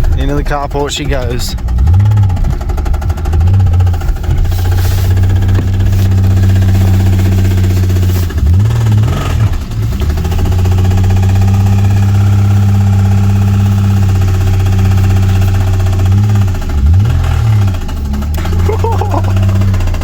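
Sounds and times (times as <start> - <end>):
car engine idling and revving: 0.0 - 20.0.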